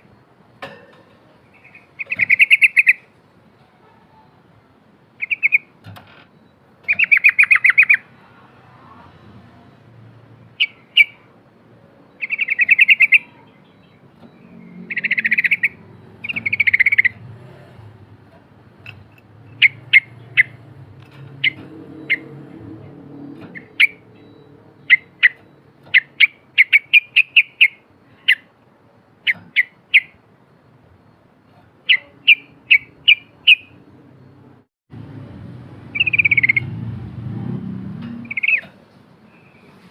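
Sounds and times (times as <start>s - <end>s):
bulbul singing trilled phrases: 6.9s - 8.1s, 12.1s - 17.3s, 18.8s - 20.8s, 23.5s - 28.5s, 31.8s - 33.8s, 35.9s - 36.7s.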